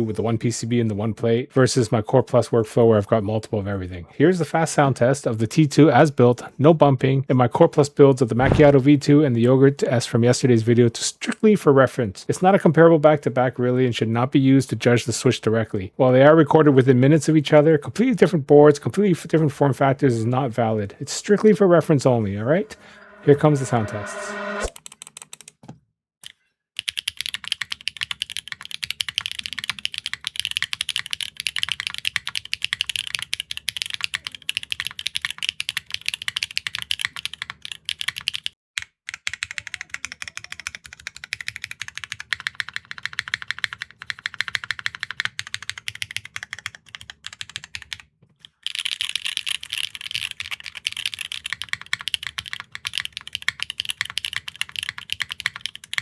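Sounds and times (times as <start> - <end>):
fast mechanical keyboard typing: 26.8 - 56.0.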